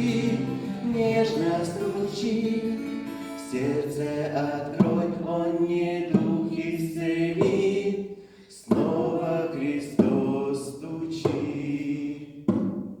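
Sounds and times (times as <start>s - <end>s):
choir singing a hymn: 0.0s - 12.4s
breath: 8.1s - 8.6s.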